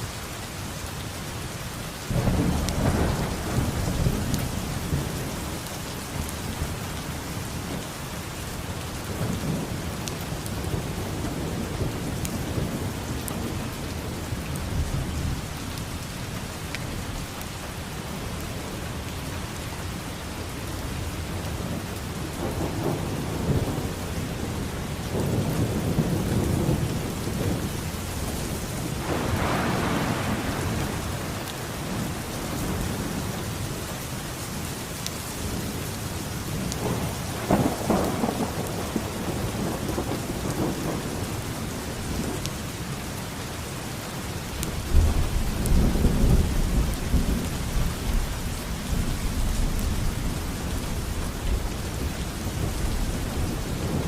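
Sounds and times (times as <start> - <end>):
steady rain falling: 0.0 - 54.0
thunder rumbling: 21.5 - 33.5, 36.5 - 42.8, 44.6 - 54.0.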